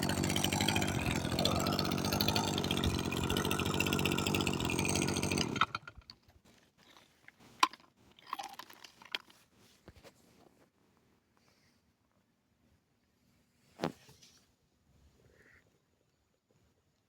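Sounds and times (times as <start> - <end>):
brush cutter engine running: 0.0 - 6.1.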